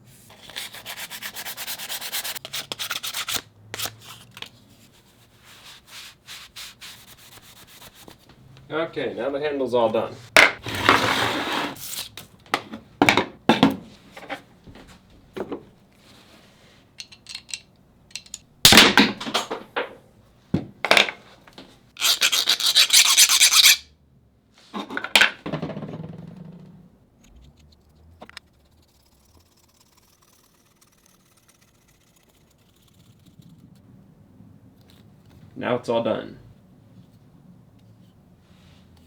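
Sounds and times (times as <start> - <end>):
metal scraping against wood: 10.4 - 12.8, 22.0 - 23.9.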